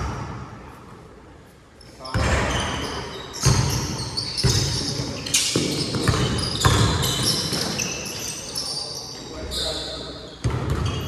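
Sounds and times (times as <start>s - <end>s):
basketball bouncing on hard court: 2.2s - 7.9s, 10.4s - 11.0s.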